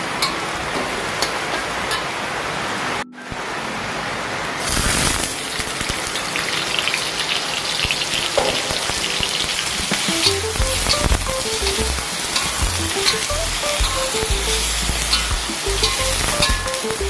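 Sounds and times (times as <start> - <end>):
background music: 2.8 - 17.0
food frying in hot oil: 4.6 - 17.0.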